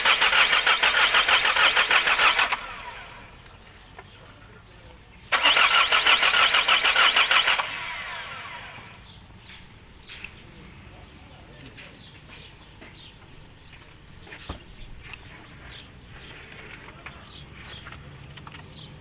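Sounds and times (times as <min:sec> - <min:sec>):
car engine cranking on starter: 0:00.0 - 0:03.5, 0:05.3 - 0:09.1.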